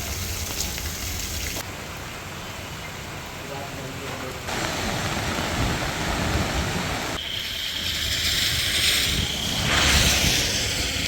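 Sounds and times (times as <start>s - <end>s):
heavy rain hissing: 3.2s - 7.8s
wind buffeting microphone: 4.5s - 7.2s.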